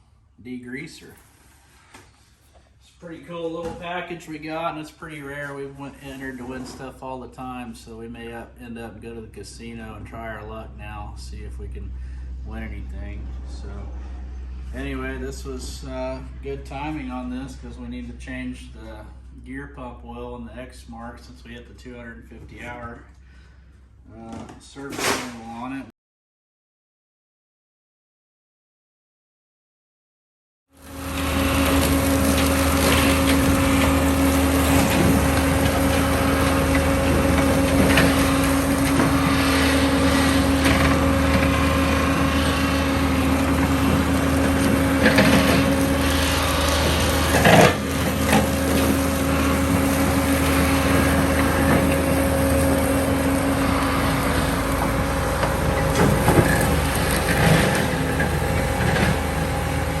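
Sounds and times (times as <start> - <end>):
skid steer engine humming: 7.4 - 23.8, 30.8 - 60.0
hydraulic whine: 30.8 - 60.0.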